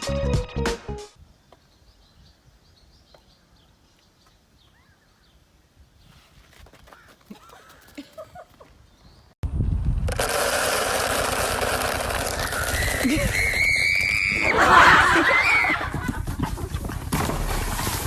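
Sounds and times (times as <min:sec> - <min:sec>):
music: 0:00.0 - 0:01.2
faint bird chirps: 0:01.4 - 0:05.4.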